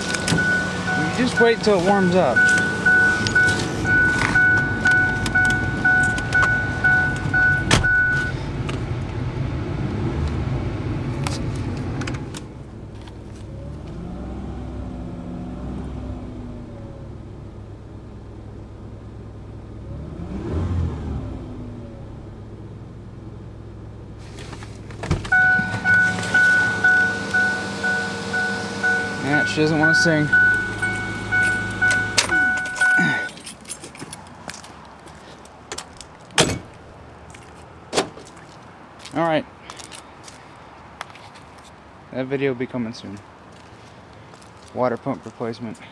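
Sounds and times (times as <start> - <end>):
vehicle warning chime dinging: 0.0 - 8.7, 25.0 - 34.3
car engine idling: 0.0 - 20.0, 21.4 - 39.0.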